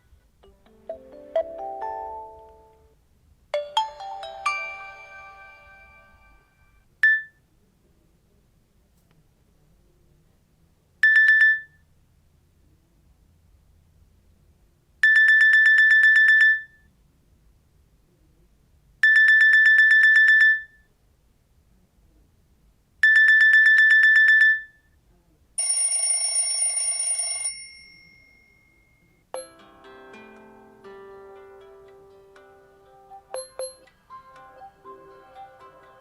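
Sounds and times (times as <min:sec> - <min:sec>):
melodic ringtone: 0:00.4 - 0:02.9, 0:03.6 - 0:06.7, 0:29.4 - 0:30.4, 0:31.2 - 0:36.0
bright phone ringing tone: 0:03.6 - 0:06.8, 0:25.6 - 0:29.6, 0:33.3 - 0:33.9
high-pitched pulsing ringtone beeps: 0:15.0 - 0:16.8, 0:19.0 - 0:20.8, 0:23.0 - 0:24.8, 0:29.4 - 0:29.6, 0:33.3 - 0:33.9.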